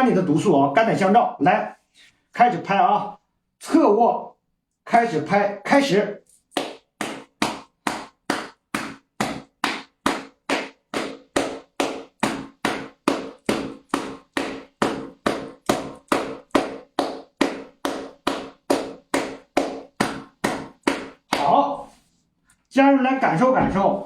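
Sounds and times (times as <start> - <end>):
hand slapping armpit: 6.3 - 21.8.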